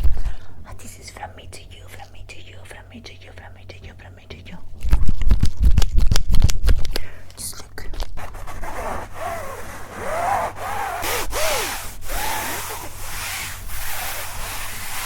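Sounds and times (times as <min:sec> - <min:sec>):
rubbing on microphones: 0:08.2 - 0:15.0
squeaky rubbing: 0:08.2 - 0:15.0.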